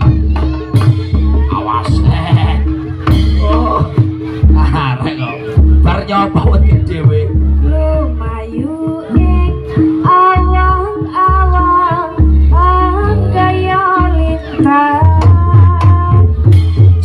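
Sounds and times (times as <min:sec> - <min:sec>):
bass line: 0:00.0 - 0:17.0
drums: 0:00.0 - 0:17.0
woman singing: 0:07.6 - 0:16.5.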